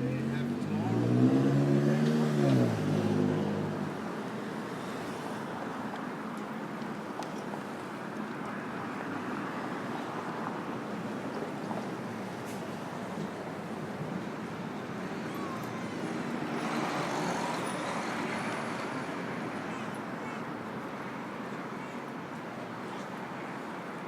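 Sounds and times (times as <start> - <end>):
passing vehicle engine hum: 0.0 - 5.4
traffic noise: 0.0 - 24.0.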